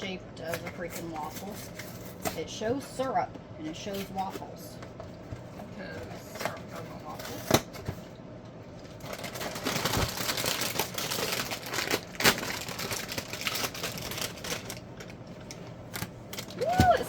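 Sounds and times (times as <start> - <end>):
plastic bag crinkling: 8.7 - 17.0.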